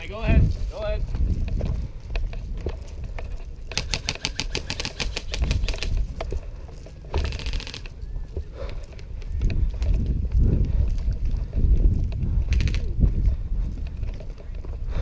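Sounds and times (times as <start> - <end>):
airsoft gun firing bursts: 3.7 - 5.9, 7.2 - 7.9.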